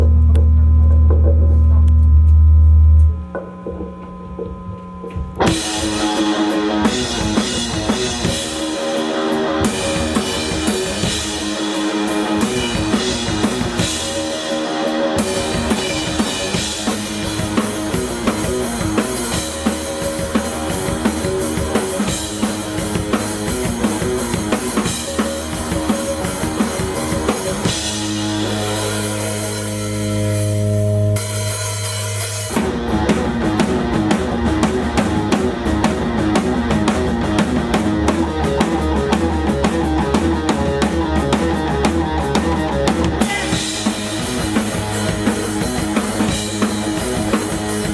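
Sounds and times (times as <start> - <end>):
held low bass note: 0.0 - 3.3
drum kit beat: 3.3 - 47.9
live rock band playing: 5.4 - 47.9.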